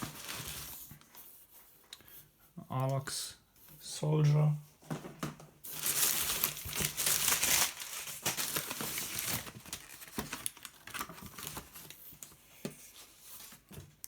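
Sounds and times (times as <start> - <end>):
packing material crinkling: 0.0 - 1.0, 5.7 - 12.2.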